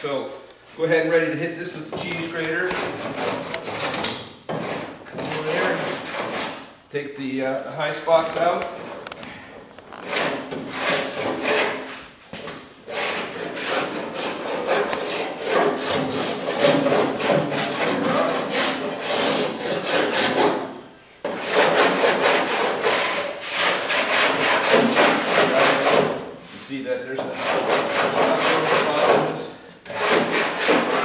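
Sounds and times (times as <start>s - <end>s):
file rasping over body filler: 2.1s - 6.7s, 10.0s - 12.1s, 12.9s - 26.3s, 27.2s - 31.0s.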